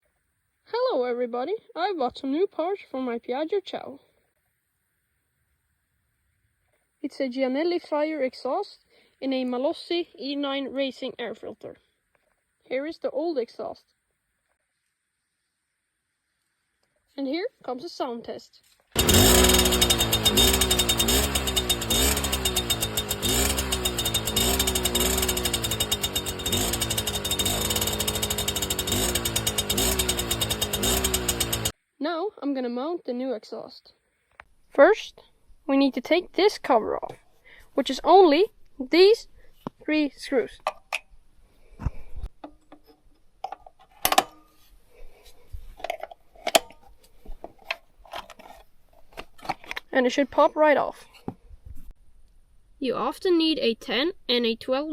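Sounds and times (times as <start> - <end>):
moped engine revving: 19.0 - 31.7.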